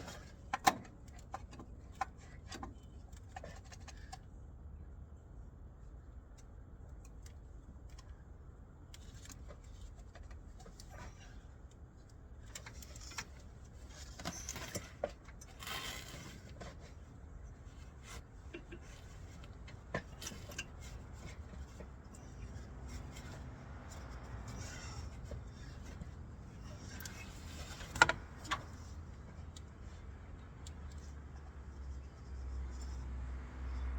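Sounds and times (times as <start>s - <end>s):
rustling and clatter: 12.4s - 30.0s.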